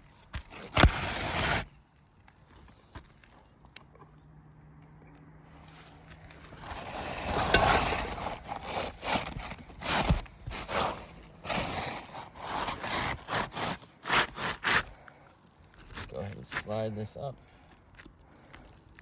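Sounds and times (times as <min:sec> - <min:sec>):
roofing shingles scraping: 0:00.4 - 0:01.8, 0:05.6 - 0:15.0.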